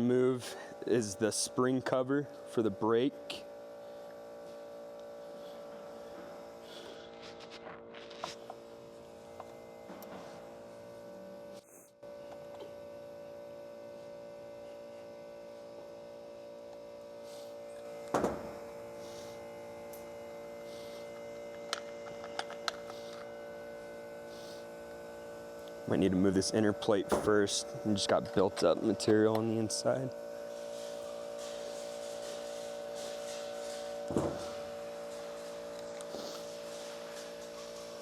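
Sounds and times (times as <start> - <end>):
electrical hum: 0.0 - 38.0
tools and parts clicking: 21.6 - 23.3.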